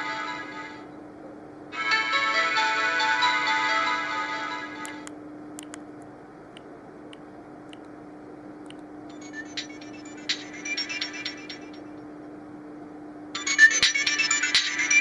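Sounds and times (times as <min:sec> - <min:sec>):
faint clicks: 0:04.8 - 0:08.0, 0:08.6 - 0:08.9
sharp clicky notes: 0:04.9 - 0:07.9
steady low hum: 0:04.9 - 0:10.5.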